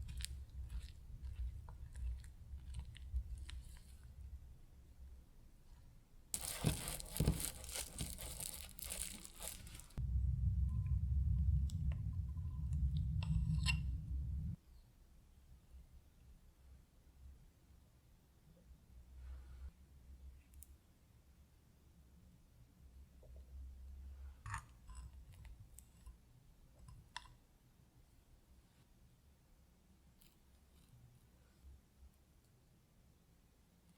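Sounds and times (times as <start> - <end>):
low steady hum: 0.0 - 17.6
wrapping crinkling and tearing: 6.4 - 10.0
steady low hum: 6.4 - 14.6.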